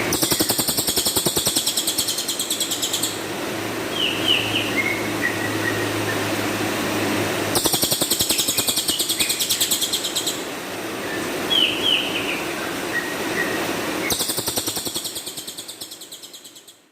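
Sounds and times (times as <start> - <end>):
bird harsh rattling trill: 0.1 - 3.2, 7.6 - 10.4, 14.1 - 16.5.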